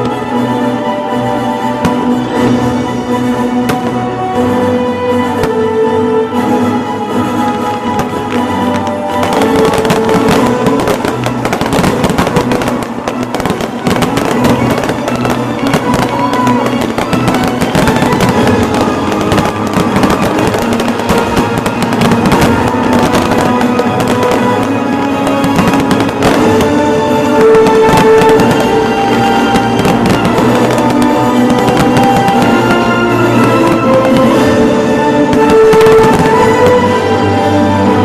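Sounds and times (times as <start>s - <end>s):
fireworks explosions and crackle: 0.0s - 38.0s
loud show music: 0.0s - 38.0s.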